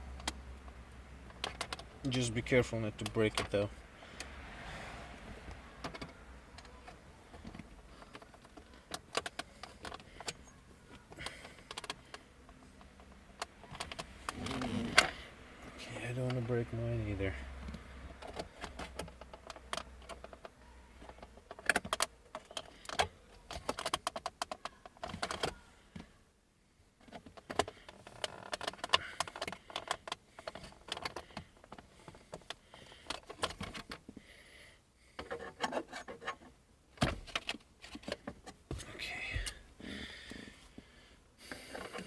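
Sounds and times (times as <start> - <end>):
plastic parts clicking and rattling: 0.2 - 3.7, 5.8 - 15.2, 17.1 - 26.1, 27.0 - 34.1, 35.2 - 38.7, 41.5 - 42.0.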